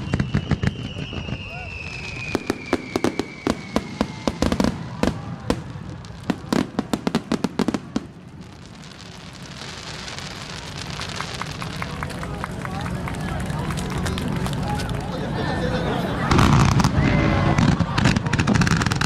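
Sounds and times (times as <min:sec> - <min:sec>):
falling firework whistle: 0:00.0 - 0:12.0, 0:16.3 - 0:19.0
fireworks cracks and bangs: 0:00.0 - 0:15.4, 0:16.0 - 0:19.0.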